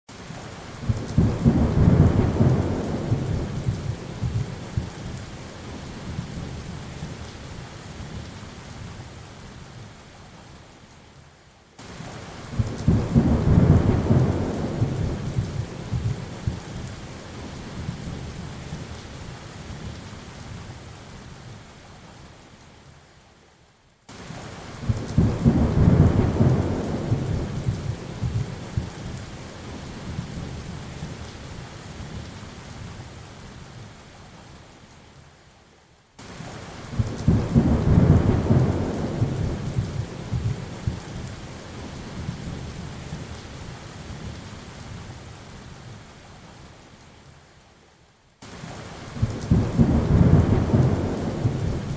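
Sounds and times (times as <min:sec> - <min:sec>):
steady rain: 0:00.1 - 0:51.9
rolling thunder: 0:49.2 - 0:51.9.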